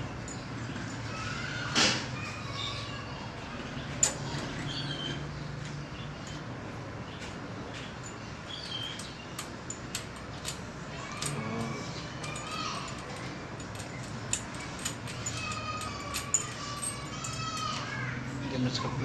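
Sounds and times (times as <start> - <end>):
birds or children calling: 0.0 - 19.0
spanner clicking on metal: 8.0 - 17.9.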